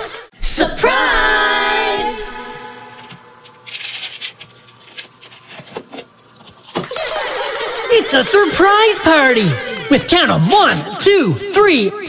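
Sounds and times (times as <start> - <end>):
person singing: 0.0 - 3.4
packaging rustling: 3.0 - 10.0.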